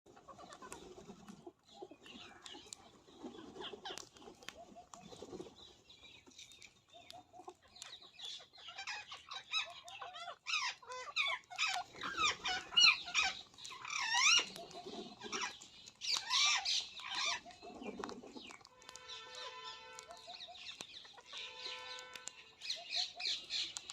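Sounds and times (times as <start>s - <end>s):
parakeets squawking: 7.8s - 17.8s, 18.7s - 23.9s.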